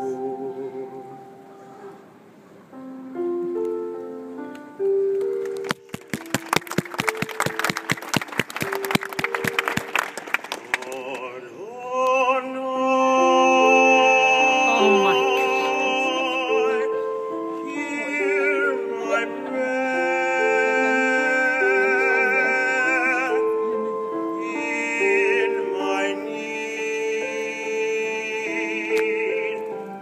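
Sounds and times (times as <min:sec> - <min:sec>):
piano accompaniment: 0:00.0 - 0:30.0
melody in long vibrato notes: 0:12.6 - 0:30.0.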